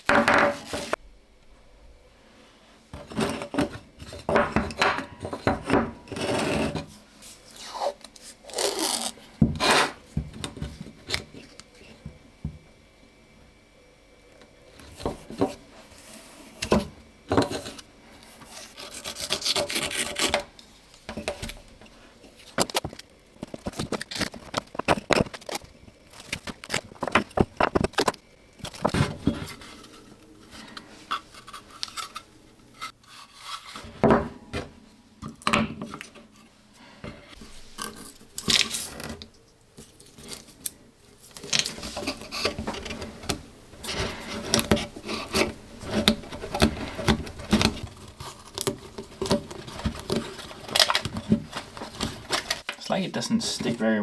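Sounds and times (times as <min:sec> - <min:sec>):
wooden pieces knocking and scraping: 0:00.1 - 0:01.0, 0:03.0 - 0:06.9, 0:19.4 - 0:33.0.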